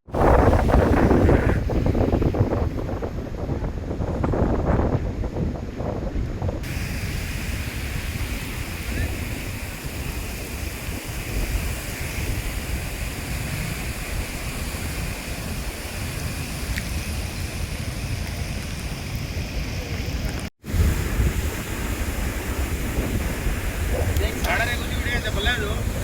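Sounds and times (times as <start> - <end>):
rough sea surf: 0.0 - 26.0
wind buffeting microphone: 0.0 - 26.0.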